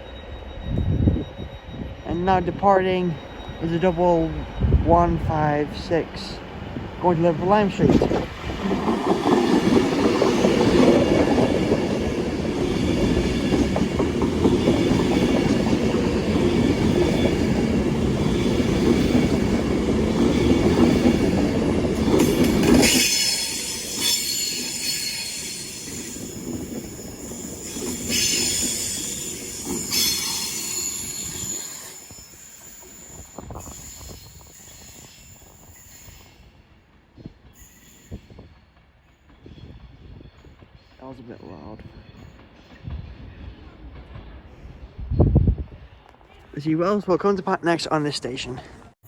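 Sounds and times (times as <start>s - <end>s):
diesel train engine and wheels: 0.0s - 49.0s
wheel squeal on rails: 9.3s - 36.5s.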